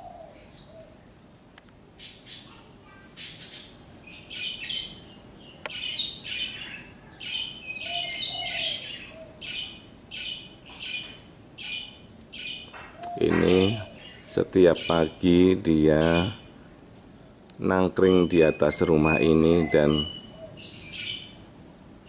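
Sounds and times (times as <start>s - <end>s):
dove cooing: 0.0s - 1.0s, 5.9s - 16.6s, 18.6s - 21.3s
small birds chirping: 0.0s - 1.2s, 2.0s - 21.7s.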